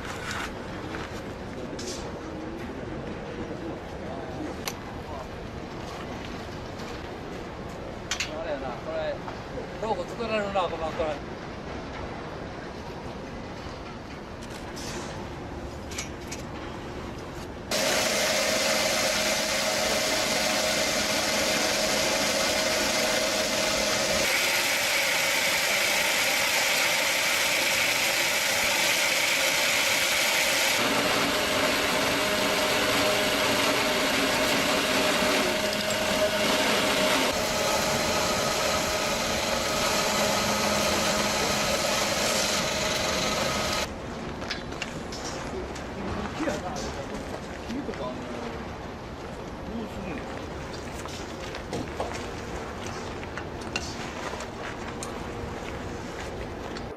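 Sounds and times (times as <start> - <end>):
wood-processing machinery running: 17.7 - 43.9.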